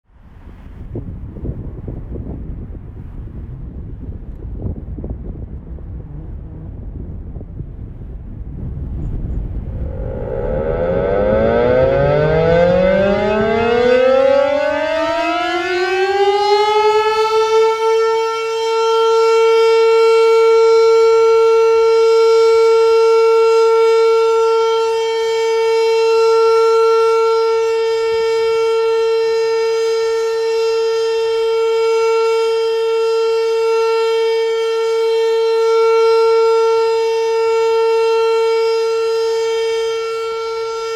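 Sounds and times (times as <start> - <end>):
tornado siren winding up: 9.0 - 40.9.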